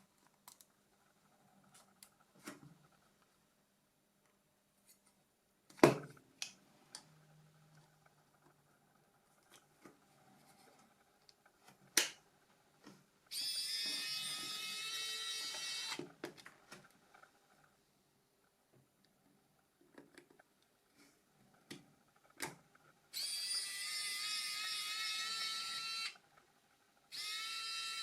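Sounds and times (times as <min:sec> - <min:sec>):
small electric motor whirring: 0:13.3 - 0:16.0, 0:23.1 - 0:26.3, 0:27.1 - 0:28.0.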